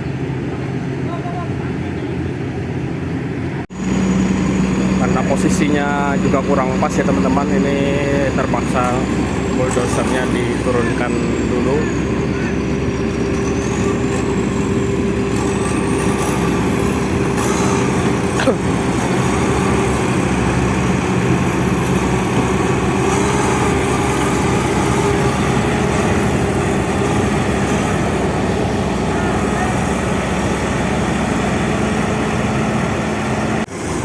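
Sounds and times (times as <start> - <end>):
diesel engine running: 0.0 - 34.0.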